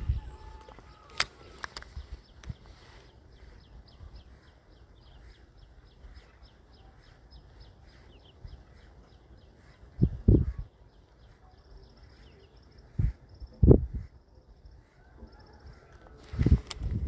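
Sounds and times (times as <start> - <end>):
sharp clicks: 0.0 - 2.7, 16.3 - 17.0
small animal chirping: 0.0 - 13.2.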